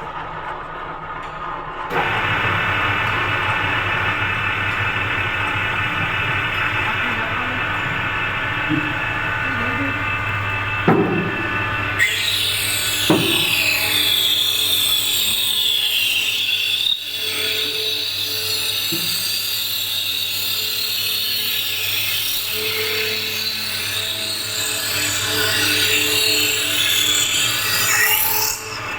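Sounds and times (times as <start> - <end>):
machine motor hum: 1.8 - 15.8
cutter shaving cane: 1.9 - 28.9.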